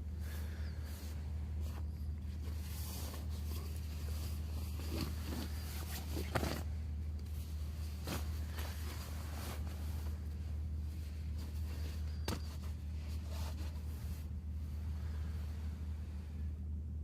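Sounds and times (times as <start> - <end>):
steady low rumble: 0.0 - 17.0
scratchy rustles: 0.8 - 6.7, 7.3 - 14.4.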